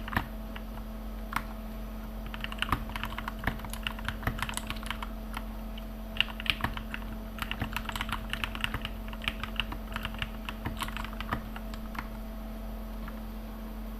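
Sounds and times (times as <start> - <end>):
mechanical keyboard typing: 0.0 - 1.6, 2.2 - 5.5, 6.2 - 12.2.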